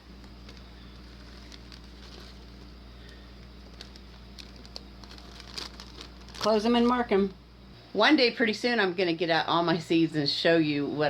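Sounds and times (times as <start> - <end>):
plastic bag rustling: 0.0 - 7.3
dry seed pods crackling: 0.0 - 7.4.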